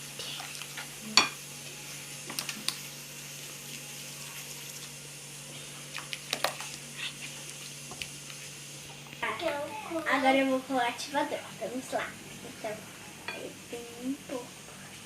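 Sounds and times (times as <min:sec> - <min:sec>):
utensil stirring slime in a bowl: 0:05.9 - 0:08.5.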